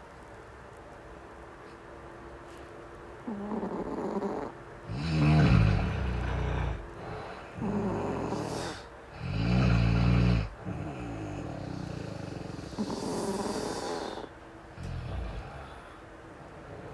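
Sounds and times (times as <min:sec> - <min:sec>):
rattling snoring: 0:03.2 - 0:15.8
hissing breath: 0:08.3 - 0:09.0, 0:11.9 - 0:14.3.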